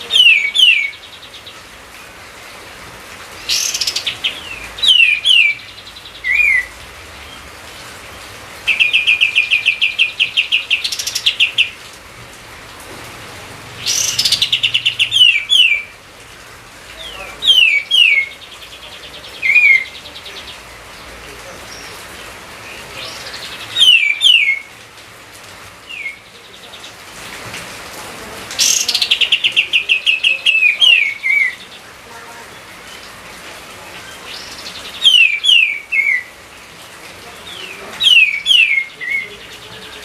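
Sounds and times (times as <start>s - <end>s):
songbird singing trills and whistles: 0.0s - 1.6s, 3.4s - 7.4s, 8.7s - 11.8s, 13.8s - 15.9s, 17.0s - 20.6s, 22.6s - 24.7s, 25.8s - 27.0s, 28.6s - 31.8s, 34.0s - 36.3s, 37.4s - 40.0s.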